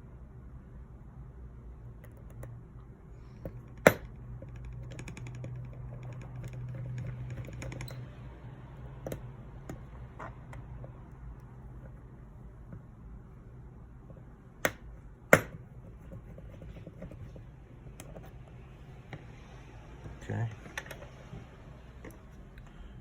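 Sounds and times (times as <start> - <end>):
steady low hum: 0.0 - 23.0
screwdriver clicks and taps: 3.4 - 8.2, 9.0 - 12.0, 14.1 - 15.6.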